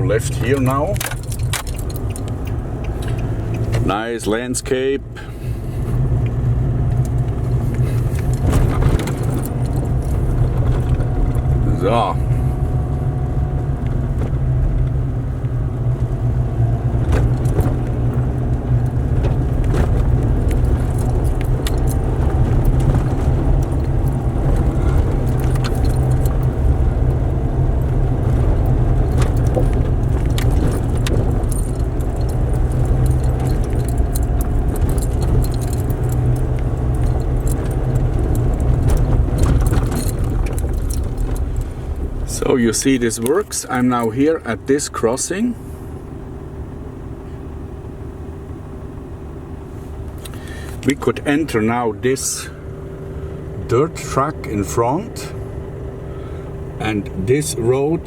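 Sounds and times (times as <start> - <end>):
rattling and clinking: 0.0 - 4.0, 6.9 - 12.4, 18.8 - 44.1
vehicle engine and road rumble: 0.0 - 58.0.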